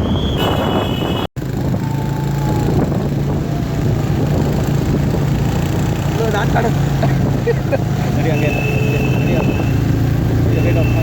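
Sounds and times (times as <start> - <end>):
wind noise: 0.0 - 7.6
motorcycle engine running: 1.4 - 11.0.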